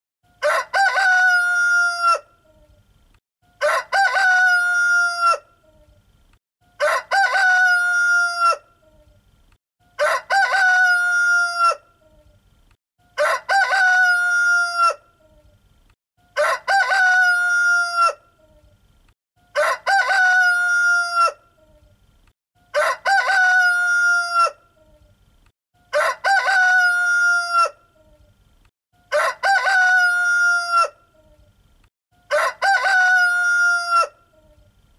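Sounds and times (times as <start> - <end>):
rooster crowing: 0.4 - 2.3, 3.6 - 5.5, 6.7 - 8.7, 10.0 - 11.8, 13.2 - 15.0, 16.3 - 18.2, 19.5 - 21.4, 22.7 - 24.6, 25.8 - 27.8, 29.0 - 31.0, 32.2 - 34.2.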